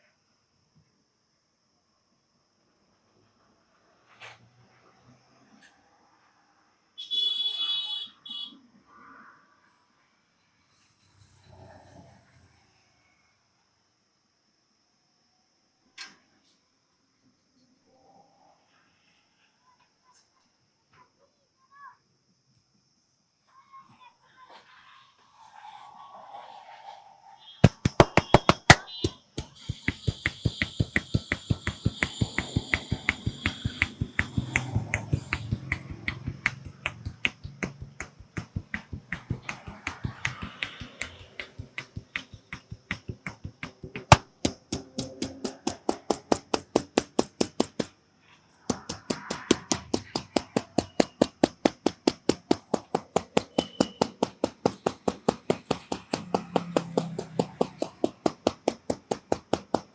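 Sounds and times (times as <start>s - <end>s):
hand slaps on head: 27.6s - 47.9s, 48.7s - 59.9s.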